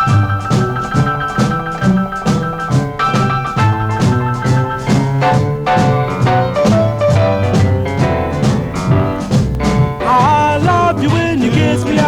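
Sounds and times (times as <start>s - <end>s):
upbeat song with steady beat: 0.0s - 12.0s
person singing: 10.0s - 12.0s.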